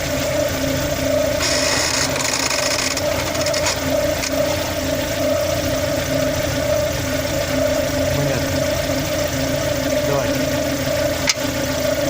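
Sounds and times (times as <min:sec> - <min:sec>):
car engine idling: 0:00.0 - 0:12.0
clutch actuator creaking and rasping: 0:01.4 - 0:06.6, 0:08.5 - 0:12.0.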